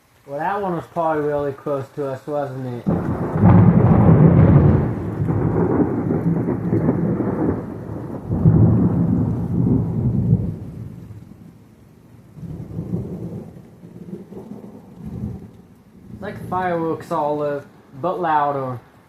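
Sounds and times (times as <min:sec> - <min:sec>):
thunder rumbling: 0:02.8 - 0:19.0.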